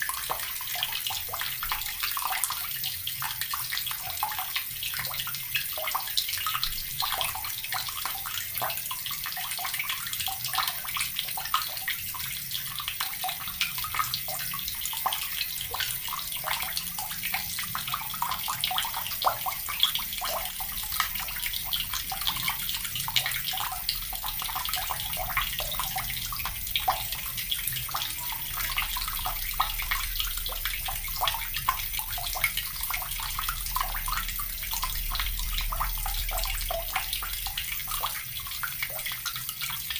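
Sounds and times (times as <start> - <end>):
water running from tap into bucket: 0.0 - 39.9.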